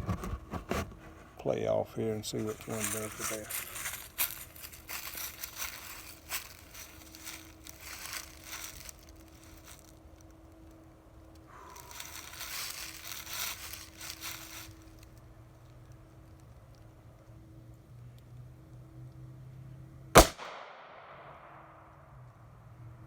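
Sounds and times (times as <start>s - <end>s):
faint steady hum: 0.0s - 23.0s
crinkling crumpling handling noise: 2.2s - 16.9s.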